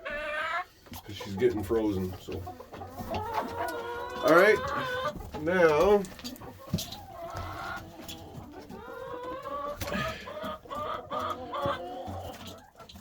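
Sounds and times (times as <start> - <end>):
hens clucking: 0.0 - 13.0.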